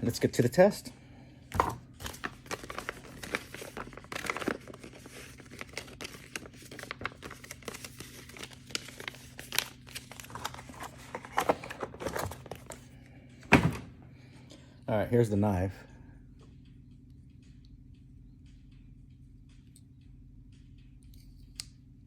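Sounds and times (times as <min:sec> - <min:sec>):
steady low hum: 0:00.0 - 0:22.0
packaging crinkling and rustling: 0:01.6 - 0:12.9.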